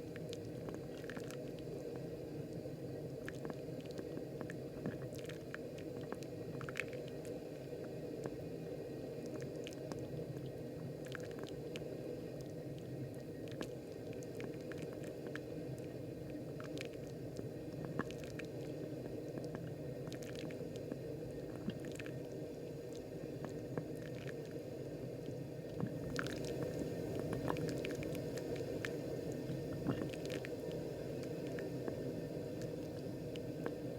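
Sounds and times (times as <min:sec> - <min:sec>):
small pops and crackles: 0:00.0 - 0:08.5, 0:09.2 - 0:24.6, 0:25.2 - 0:33.9
water running onto coffee grounds: 0:25.6 - 0:33.9.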